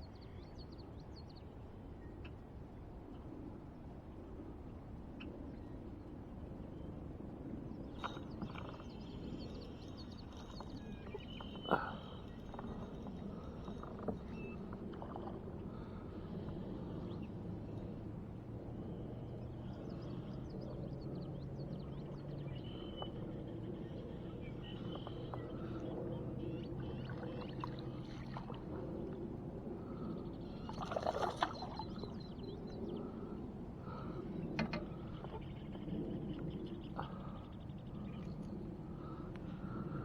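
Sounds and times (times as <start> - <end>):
river water running: 30.5 - 32.3.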